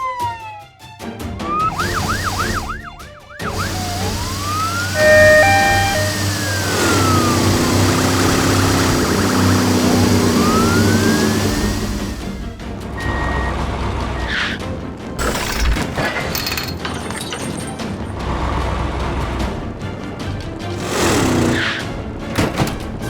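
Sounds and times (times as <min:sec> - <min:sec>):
police siren yelp and wail: 0:00.0 - 0:00.8, 0:01.4 - 0:12.4
short beeping tones: 0:01.7 - 0:11.6, 0:13.0 - 0:14.3
low steady drone: 0:03.5 - 0:14.2.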